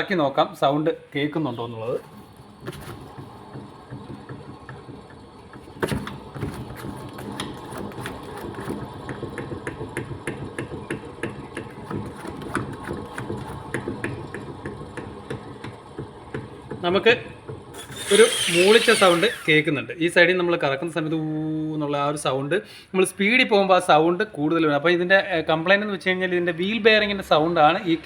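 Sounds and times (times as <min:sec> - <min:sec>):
wheel bearing hum with ticking: 0:02.6 - 0:19.7.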